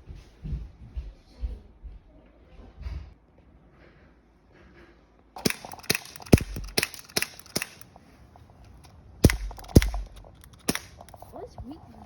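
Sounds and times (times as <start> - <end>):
air gun firing: 5.4 - 7.9, 9.2 - 11.3.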